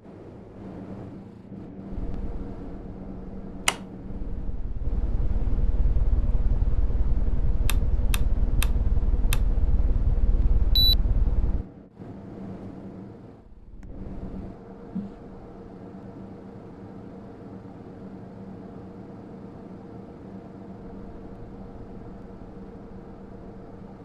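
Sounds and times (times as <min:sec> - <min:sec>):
air conditioner humming: 0:00.0 - 0:24.0
sharp clicks: 0:03.7 - 0:03.9.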